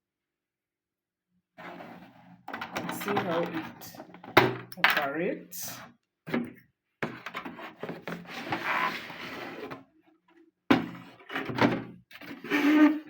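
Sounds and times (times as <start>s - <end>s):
clock rubbing and rattling: 1.7s - 4.0s.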